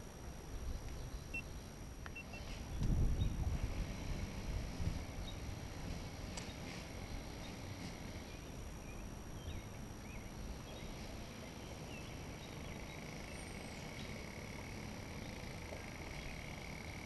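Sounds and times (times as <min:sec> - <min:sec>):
river low rumble: 0:00.0 - 0:17.0
bird chirps: 0:07.4 - 0:14.3.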